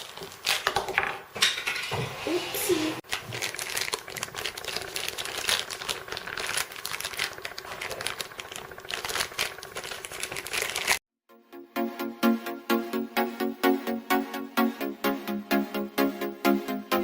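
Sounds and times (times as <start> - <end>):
plastic packets crinkling: 0.0 - 1.0, 3.0 - 11.0.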